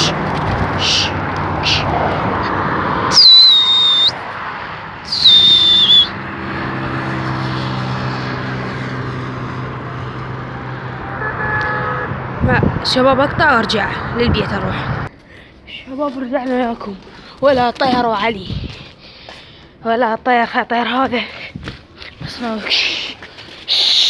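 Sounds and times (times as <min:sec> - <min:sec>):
vehicle engine humming: 0:00.0 - 0:15.2
loud sharp human whistles: 0:03.1 - 0:04.2, 0:05.1 - 0:06.2.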